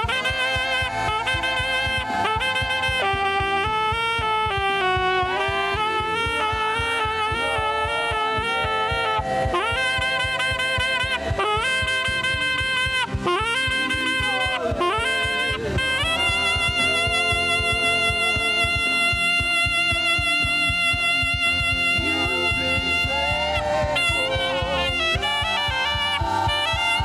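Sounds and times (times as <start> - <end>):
backing accompaniment: 0.0 - 27.0
saxophone melody with vibrato: 0.0 - 27.0.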